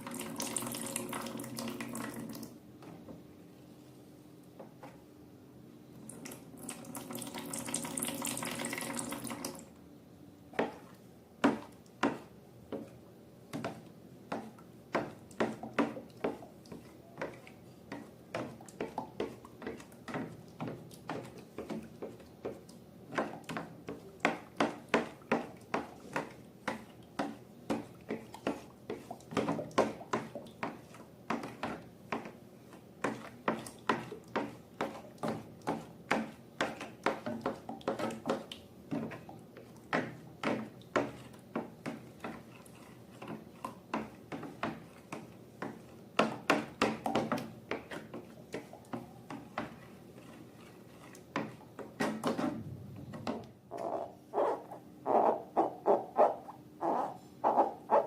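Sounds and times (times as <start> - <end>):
liquid pouring into container: 0.0 - 2.5.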